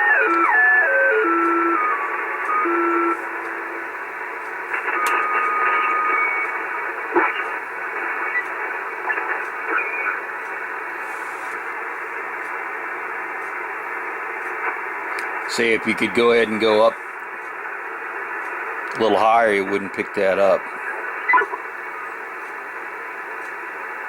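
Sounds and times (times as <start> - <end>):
steady radio whistle: 0.0 - 3.9, 4.7 - 10.3, 20.8 - 22.2
radio static hiss: 0.0 - 24.0.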